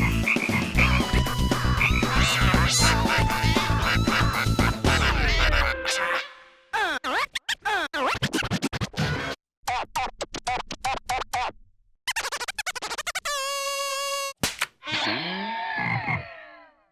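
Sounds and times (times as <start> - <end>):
cartoon soundtrack music: 0.0 - 8.3.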